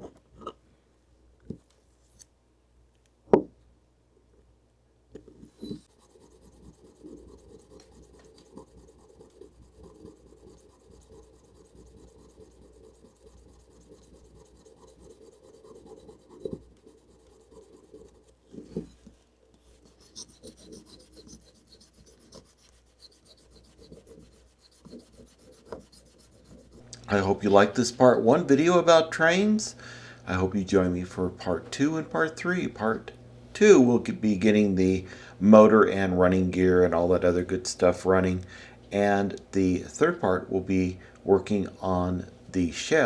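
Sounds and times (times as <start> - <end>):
filing and rubbing metal part: 5.5 - 26.9.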